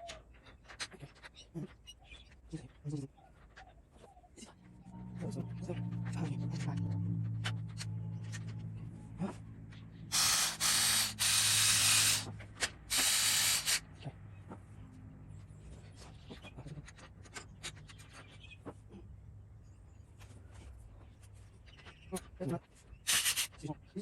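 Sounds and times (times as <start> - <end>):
loud hissing bursts: 10.1 - 12.3, 12.9 - 13.9, 23.1 - 23.5
clicks and taps of small parts: 12.4 - 13.8.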